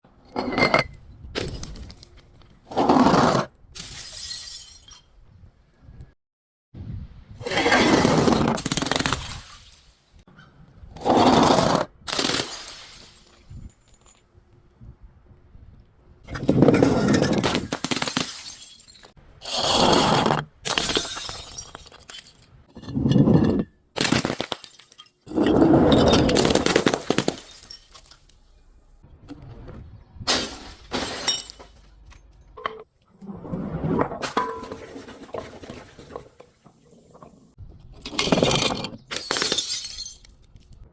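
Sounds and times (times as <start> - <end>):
glass shattering: 3.8 - 5.1, 12.1 - 14.2, 17.0 - 19.2, 20.7 - 22.6, 24.0 - 28.4, 30.3 - 31.9, 38.2 - 40.5
glass fragments clinking: 4.0 - 5.1, 17.9 - 19.2, 24.4 - 28.4, 30.4 - 31.8, 39.1 - 40.5.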